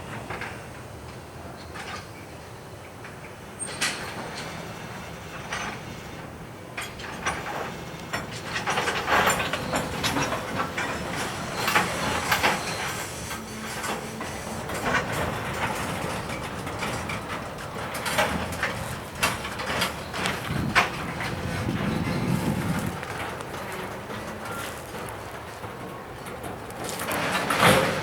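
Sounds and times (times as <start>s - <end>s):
freight train rumble: 0.0s - 28.0s
train wheels clacking over rail joints: 3.0s - 28.0s
metallic clanks: 6.8s - 28.0s.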